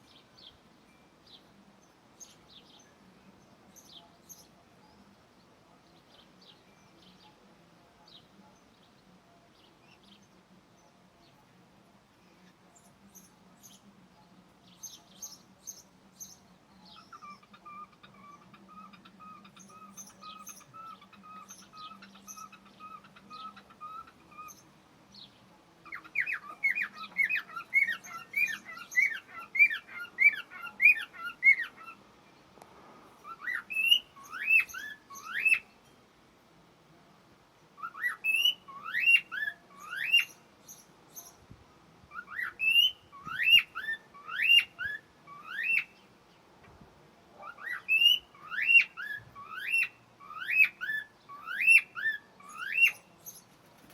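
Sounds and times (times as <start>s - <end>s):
cockatiels chirping: 17.0s - 24.6s, 25.9s - 32.0s, 33.2s - 35.7s, 37.8s - 40.4s, 42.1s - 45.9s, 47.4s - 53.4s
cockatiels whistled calls: 33.2s - 35.6s, 37.8s - 40.4s, 42.1s - 45.9s, 47.4s - 53.0s.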